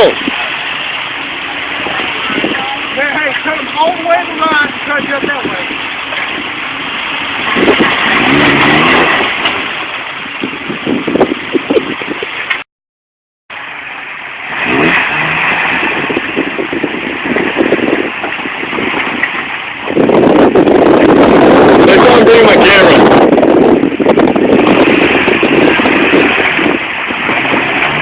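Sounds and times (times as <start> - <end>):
vehicle engine revving: 5.6 - 11.0, 14.2 - 28.0.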